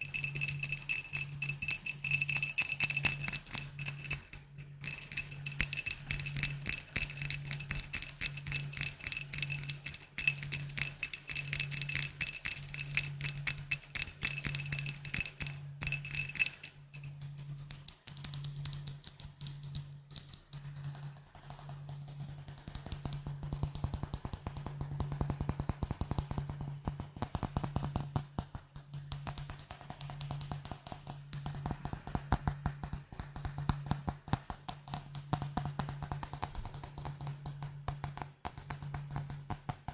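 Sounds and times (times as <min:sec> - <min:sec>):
fast tapping on glass bottles: 0:00.0 - 0:20.7.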